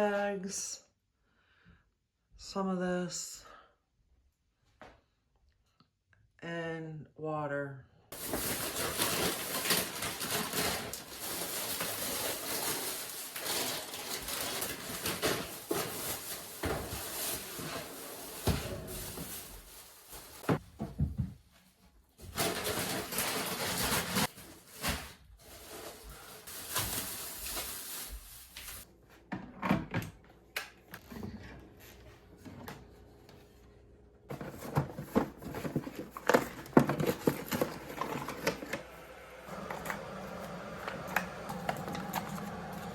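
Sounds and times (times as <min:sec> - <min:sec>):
bags rustling: 0:08.1 - 0:20.7, 0:22.2 - 0:28.9, 0:34.3 - 0:38.8, 0:39.5 - 0:42.9
items knocking and clattering: 0:08.2 - 0:21.6, 0:22.2 - 0:27.2, 0:29.2 - 0:30.2, 0:34.3 - 0:38.9, 0:39.5 - 0:42.9.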